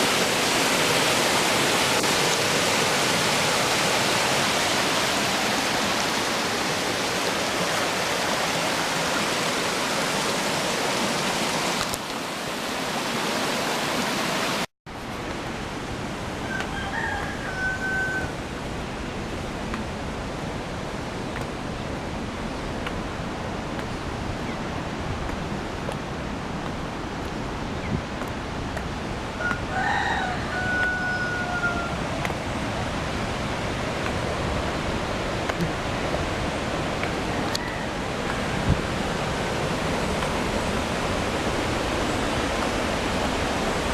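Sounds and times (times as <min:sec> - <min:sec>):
waterfall rushing: 0:00.0 - 0:14.7, 0:15.4 - 0:43.9
quieter water noise: 0:00.0 - 0:43.9
rooster crowing: 0:16.4 - 0:18.4, 0:29.4 - 0:32.1, 0:37.4 - 0:38.7.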